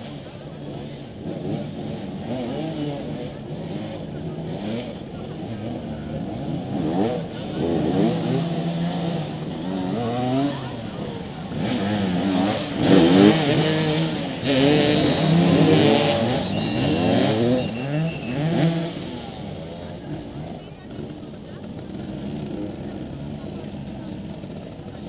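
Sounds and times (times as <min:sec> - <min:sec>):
motorcycle engines revving: 0:00.0 - 0:25.0.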